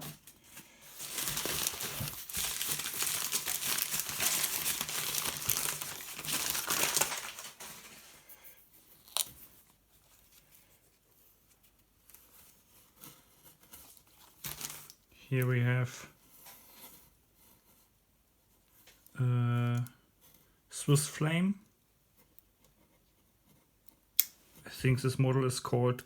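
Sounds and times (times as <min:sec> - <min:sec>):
packing wrap crinkling and tearing: 0:00.0 - 0:08.2, 0:09.0 - 0:09.4, 0:14.0 - 0:15.0.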